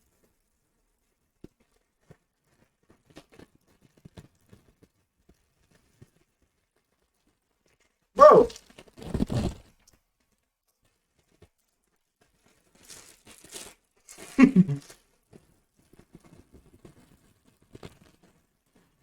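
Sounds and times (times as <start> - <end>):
brief vocal sound: 8.2 - 8.6
crinkling crackles: 12.4 - 15.1
crackers being chewed: 12.8 - 15.0.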